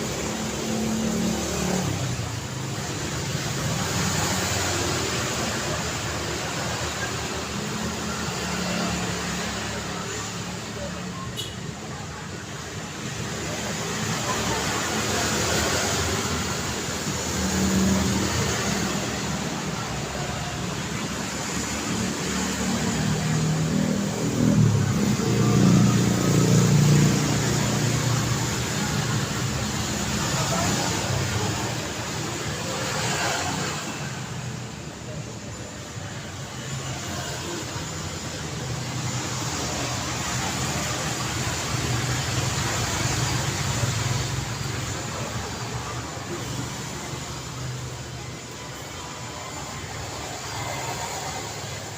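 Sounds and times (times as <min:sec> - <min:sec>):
road traffic roar: 0:00.0 - 0:51.9
vehicle approaching: 0:13.1 - 0:51.9.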